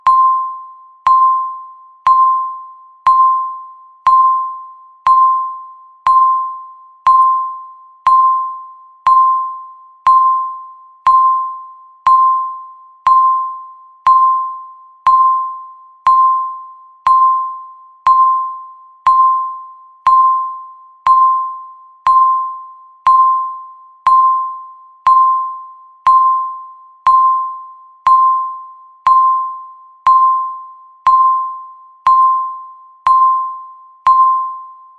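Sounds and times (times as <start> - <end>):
bell-like electronic timer tick: 0.0 - 34.9.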